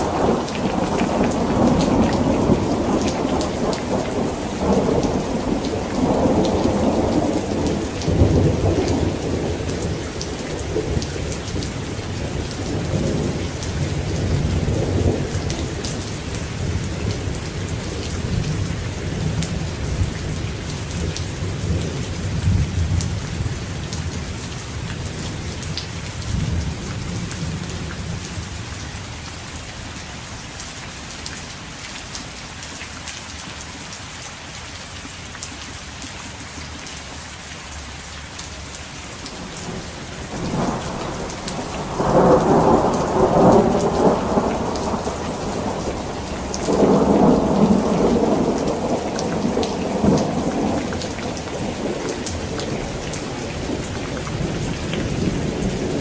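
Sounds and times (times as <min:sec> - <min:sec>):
steady rain: 0:00.0 - 0:56.0
rolling thunder rumble: 0:39.4 - 0:56.0.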